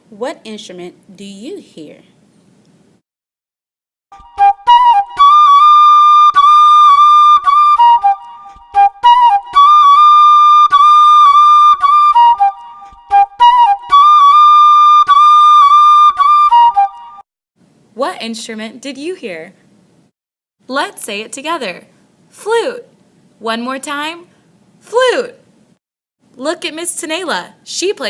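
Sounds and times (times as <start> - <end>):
flute melody: 4.1 - 17.2.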